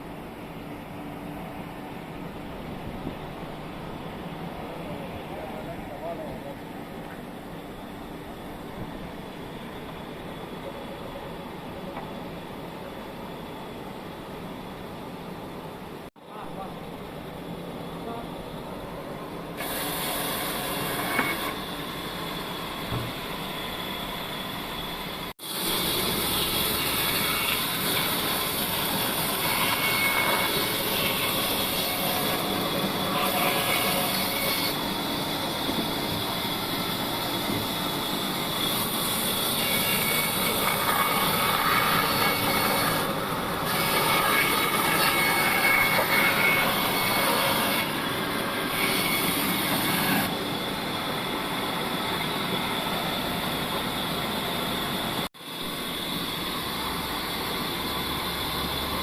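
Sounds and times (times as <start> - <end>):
bandsaw cutting log: 19.6 - 21.6, 25.5 - 34.8, 38.5 - 50.4.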